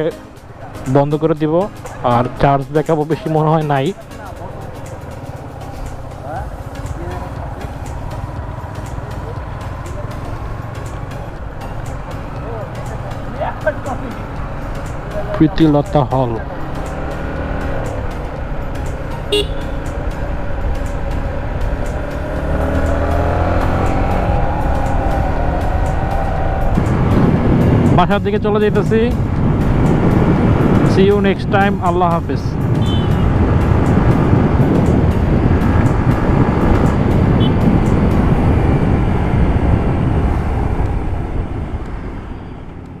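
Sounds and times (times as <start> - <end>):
motorcycle engine running: 4.0 - 41.8
vehicle horn beep: 19.3 - 19.9, 32.8 - 33.4, 37.4 - 37.7
wind on microphone: 23.0 - 31.8, 32.5 - 43.0.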